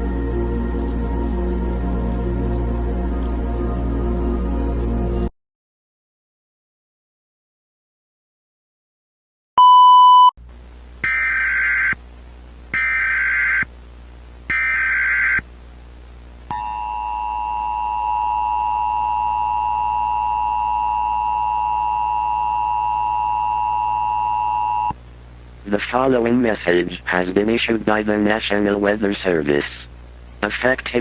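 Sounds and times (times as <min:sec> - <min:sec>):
data bursts: 0:11.0 - 0:12.0, 0:12.8 - 0:13.7, 0:14.5 - 0:15.4.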